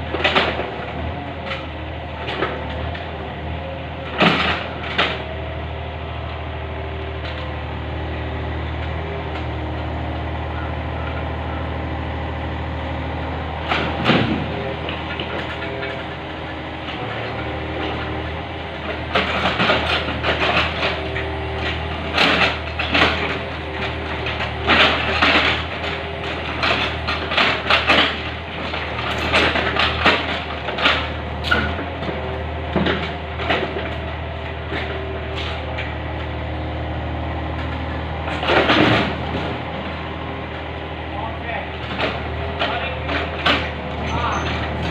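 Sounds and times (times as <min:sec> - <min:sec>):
diesel engine running: 0:00.0 - 0:44.9.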